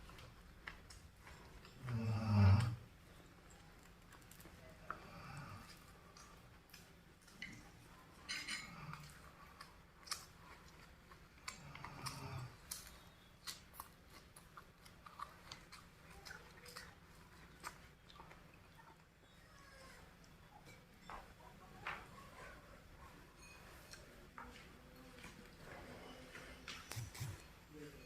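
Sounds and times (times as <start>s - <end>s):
chewing raw vegetables: 0.0s - 27.7s.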